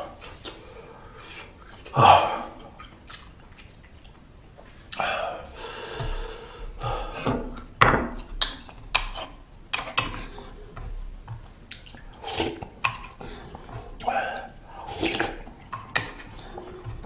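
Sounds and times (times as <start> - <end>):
mouth eating sounds: 11.7 - 16.9.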